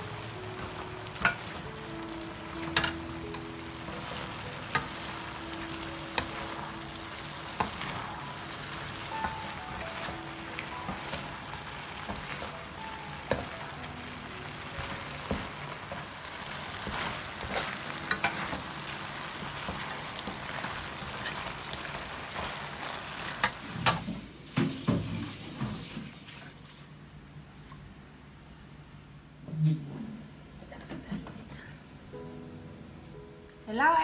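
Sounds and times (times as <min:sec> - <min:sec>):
oil sizzling in a pan: 0:00.0 - 0:26.4.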